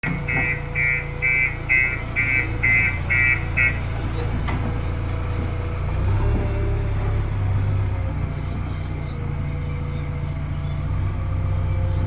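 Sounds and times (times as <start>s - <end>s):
reversing alarm beeping: 0.0s - 4.0s
diesel engine rumbling: 0.0s - 12.0s.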